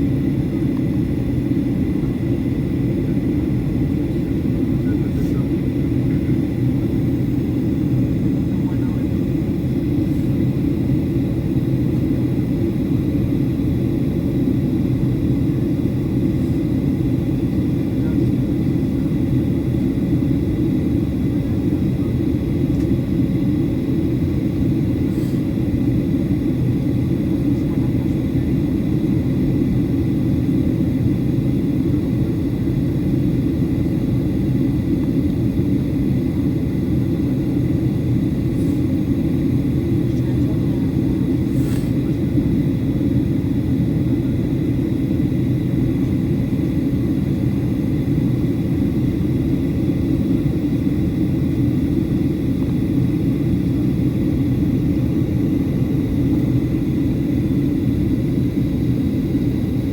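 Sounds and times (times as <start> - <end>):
airplane cabin rumble: 0.0 - 59.9.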